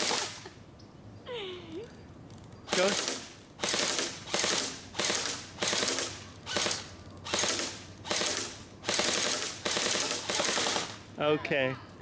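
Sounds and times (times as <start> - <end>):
airsoft gun automatic bursts: 0.0 - 0.4, 2.7 - 11.0.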